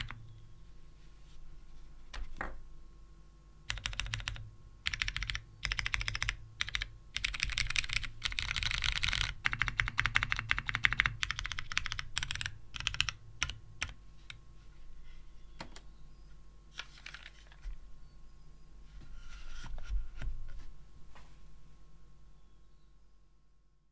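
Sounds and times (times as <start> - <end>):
mechanical keyboard typing: 0.0 - 0.2, 3.7 - 14.4.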